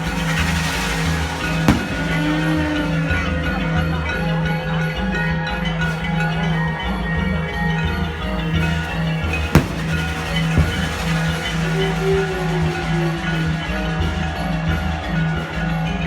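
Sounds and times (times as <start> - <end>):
firework bang: 0.6 - 4.0, 8.5 - 12.0
low steady drum beat: 1.7 - 3.0, 9.4 - 11.9.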